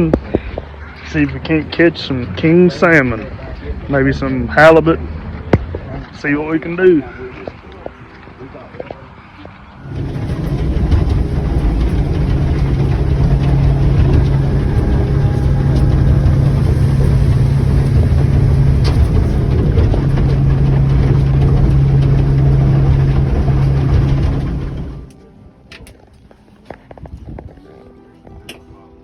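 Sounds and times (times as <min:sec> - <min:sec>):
boat engine droning: 0:06.2 - 0:25.9
water rushing: 0:09.8 - 0:25.1.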